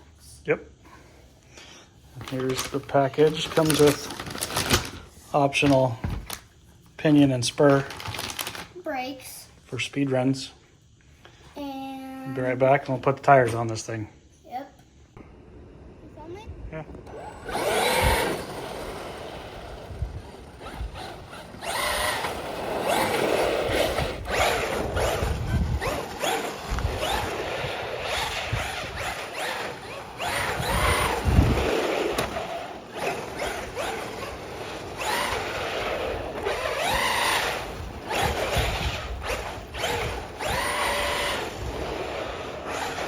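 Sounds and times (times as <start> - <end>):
power drill whirring: 17.0 - 43.0.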